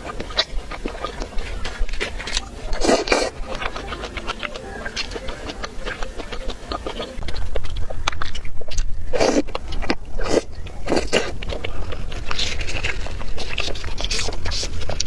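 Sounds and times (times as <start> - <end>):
low hum: 0.0 - 8.6
crunchy chewing: 0.0 - 15.0.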